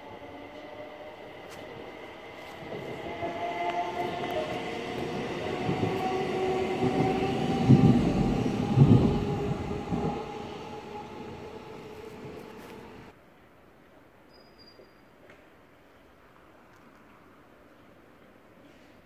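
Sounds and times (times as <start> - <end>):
electric train passing: 0.0 - 13.1.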